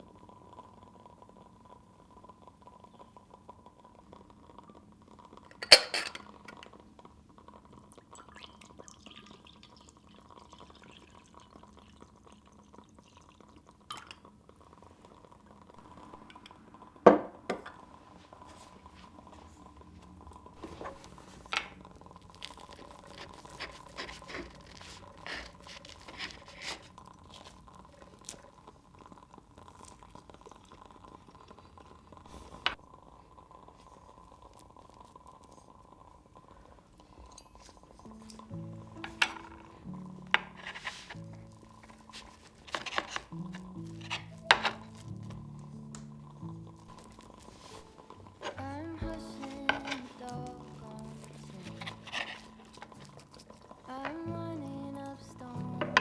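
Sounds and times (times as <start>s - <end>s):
glass and dishware clinking: 5.5s - 6.7s, 13.9s - 14.3s, 37.3s - 41.2s, 41.8s - 45.4s, 46.9s - 53.3s.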